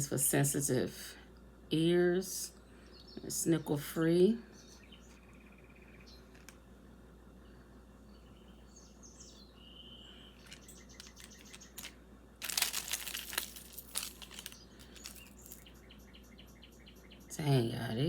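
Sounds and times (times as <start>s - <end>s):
plastic packaging crinkling: 10.4s - 15.7s.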